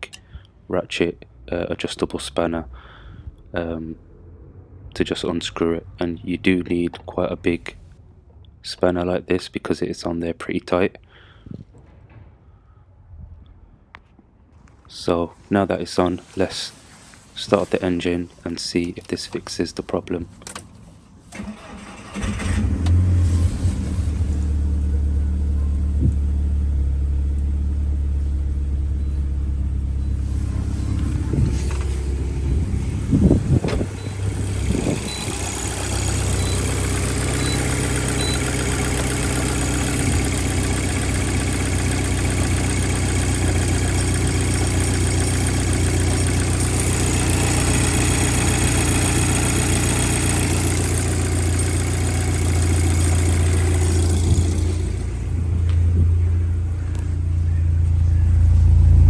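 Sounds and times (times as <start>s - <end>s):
car engine idling: 16.1s - 59.0s.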